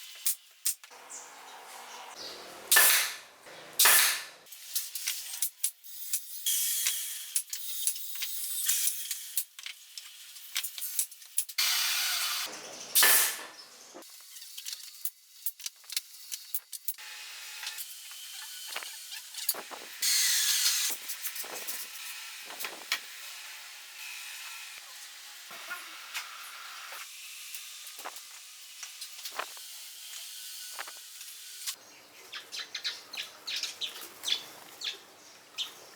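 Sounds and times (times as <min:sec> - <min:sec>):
small birds chirping: 0:00.9 - 0:02.7, 0:12.5 - 0:14.0, 0:31.8 - 0:35.9.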